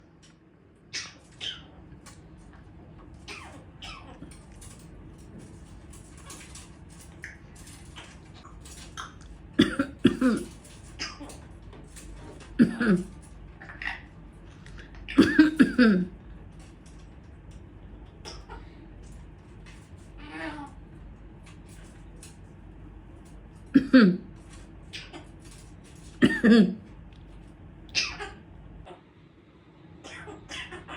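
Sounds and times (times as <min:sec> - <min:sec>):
parrot imitating a cough: 0:03.3 - 0:04.1, 0:09.0 - 0:11.4, 0:12.5 - 0:14.1, 0:14.8 - 0:16.2, 0:23.7 - 0:24.2, 0:26.2 - 0:26.8
person coughing: 0:09.6 - 0:10.6, 0:12.6 - 0:13.1, 0:15.2 - 0:16.2, 0:23.7 - 0:24.3, 0:26.2 - 0:26.8.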